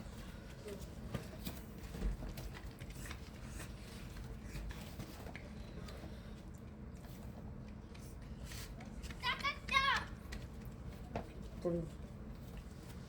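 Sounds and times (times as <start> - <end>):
clicks and taps of eating: 8.8 - 11.5.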